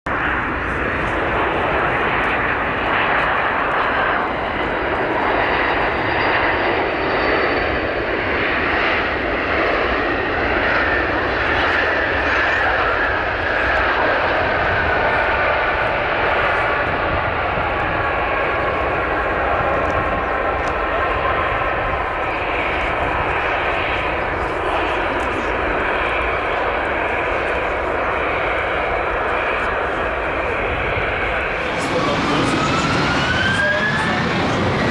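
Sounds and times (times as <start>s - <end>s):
aircraft engine and airflow noise: 0.1s - 34.9s.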